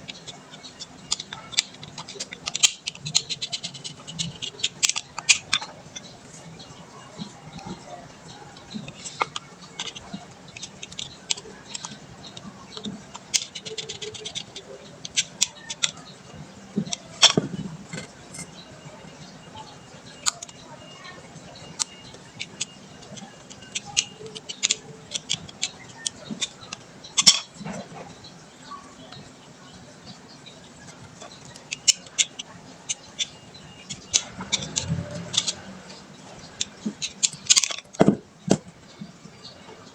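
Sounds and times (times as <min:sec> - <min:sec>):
fast run of even clicks: 0:07.5 - 0:16.0
metal tools clicking and clinking: 0:36.4 - 0:38.6.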